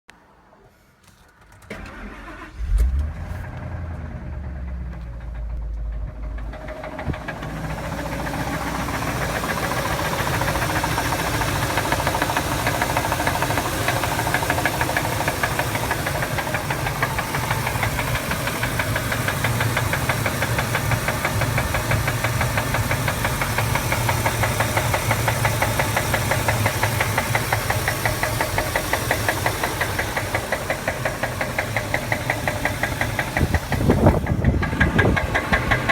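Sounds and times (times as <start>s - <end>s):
engine starting: 0.6s - 5.4s, 33.4s - 35.9s
engine running with rhythmic knock: 2.6s - 35.9s.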